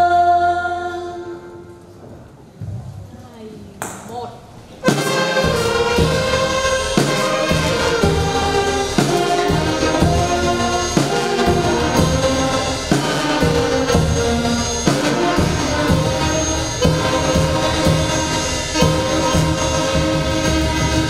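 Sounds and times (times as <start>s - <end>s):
celebratory brass band music: 4.8s - 21.0s.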